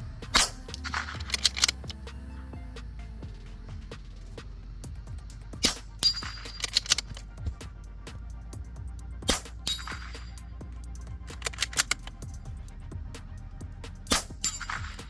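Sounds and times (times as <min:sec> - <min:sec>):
bullet ringing on steel target: 0:05.6 - 0:06.7, 0:09.3 - 0:10.2, 0:14.1 - 0:15.0
light metallic clinks: 0:06.0 - 0:07.3
rifle shots: 0:14.1 - 0:15.0.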